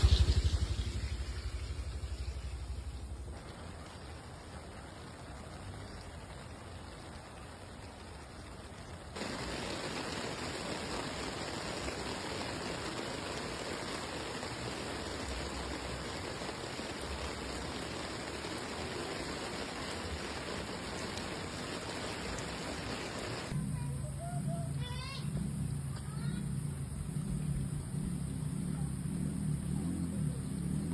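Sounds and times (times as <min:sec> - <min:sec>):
rushing water: 0:00.0 - 0:23.6.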